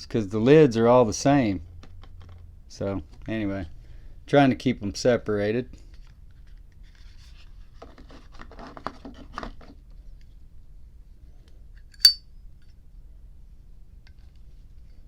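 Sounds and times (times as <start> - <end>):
lighter clicking and rattling: 12.0 - 12.2
sharp metallic lighter click: 12.0 - 12.2.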